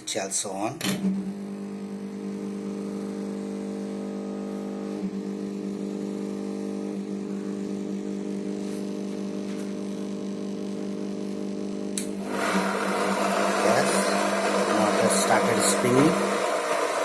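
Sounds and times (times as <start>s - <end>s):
drain pump electric hum: 0.0s - 17.0s.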